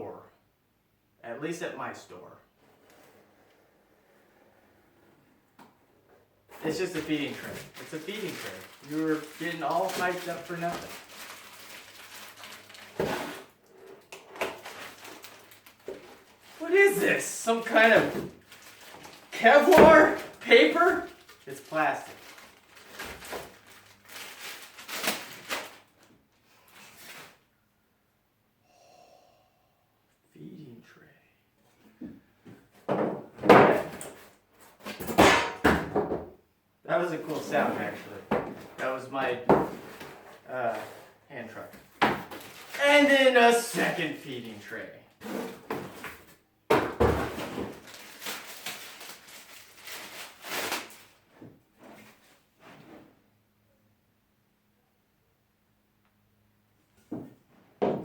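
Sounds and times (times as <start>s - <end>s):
plastic packaging rustling: 6.5s - 27.4s, 42.0s - 44.4s, 47.0s - 52.3s.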